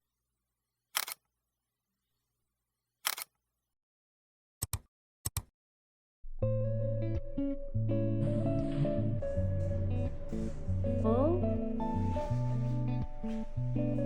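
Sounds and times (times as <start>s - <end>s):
camera shutter clicks: 1.0s - 1.2s, 3.0s - 3.3s
guitar music: 6.4s - 14.0s.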